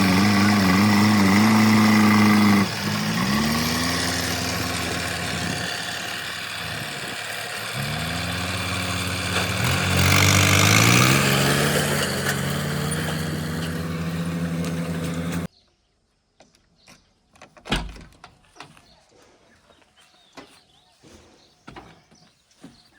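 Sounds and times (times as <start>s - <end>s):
heavy diesel engine revving: 0.0s - 15.5s.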